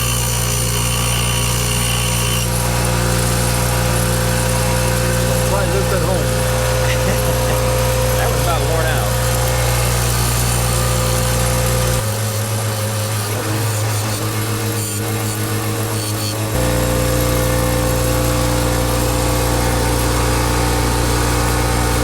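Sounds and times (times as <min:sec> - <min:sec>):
chisel grinding hiss: 0:00.0 - 0:14.2
bench grinder motor hum: 0:00.0 - 0:22.0.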